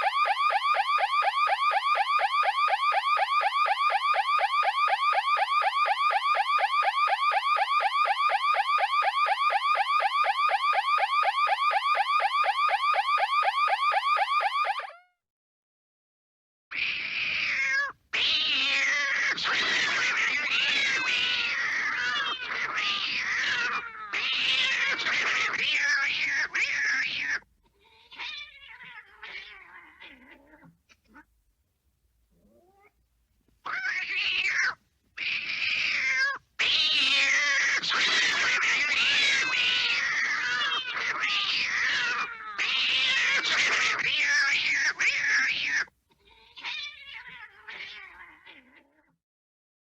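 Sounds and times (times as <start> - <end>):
cartoon cat yowls: 14.6 - 15.2, 16.7 - 31.3, 33.6 - 49.2
cartoon cat screeching: 14.8 - 15.2, 16.7 - 31.3, 33.6 - 49.2.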